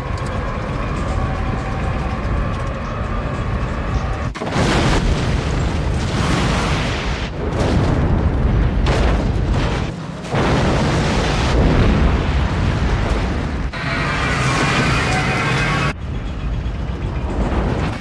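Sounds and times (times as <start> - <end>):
loud continuous rumble: 0.0 - 18.0
explosions: 4.2 - 16.0.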